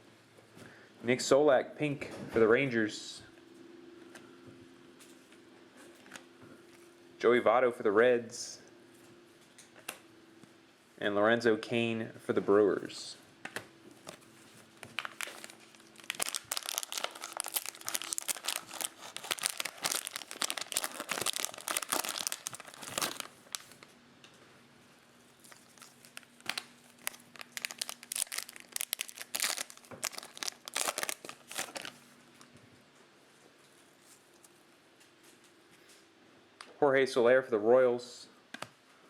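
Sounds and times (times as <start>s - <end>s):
foil wrapper crinkling and tearing: 14.8s - 23.9s, 25.3s - 32.5s.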